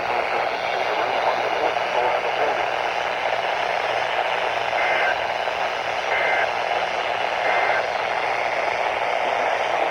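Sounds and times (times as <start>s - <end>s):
weather radio receiver hiss: 0.0s - 9.9s
warbling two-tone data bursts: 7.4s - 7.9s.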